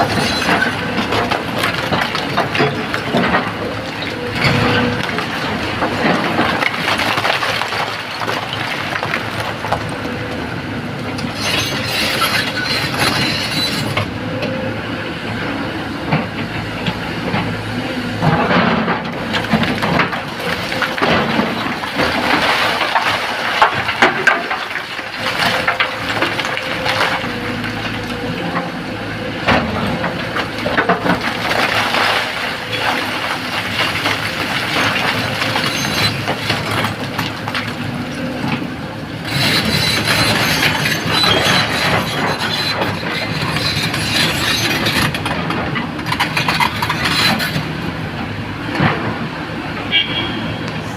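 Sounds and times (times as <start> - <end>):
excavator diesel engine under load: 0.0 - 50.9
knocks and clatter: 39.3 - 49.2.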